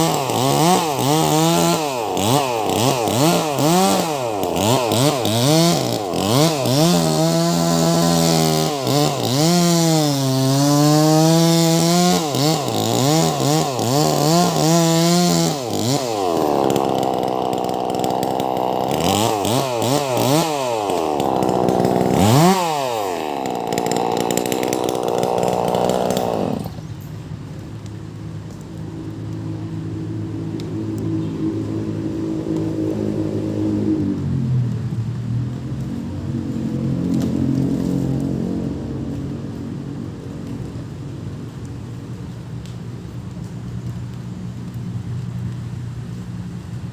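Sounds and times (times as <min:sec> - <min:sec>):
chainsaw cutting log: 0:00.0 - 0:27.1, 0:30.5 - 0:34.9, 0:35.9 - 0:38.8.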